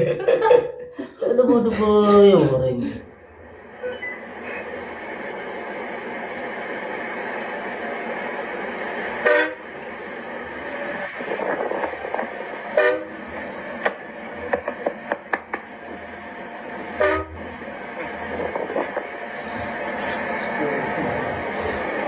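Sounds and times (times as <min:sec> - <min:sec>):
steady background noise: 0:00.0 - 0:22.0
vehicle horn blasts: 0:09.2 - 0:09.6, 0:12.8 - 0:13.1, 0:17.0 - 0:17.4.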